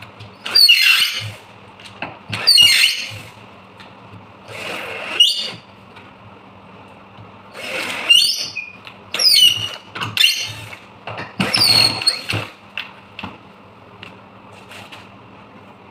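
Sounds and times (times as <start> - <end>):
cordless drill motor whirring: 4.5 - 5.6, 7.5 - 8.6.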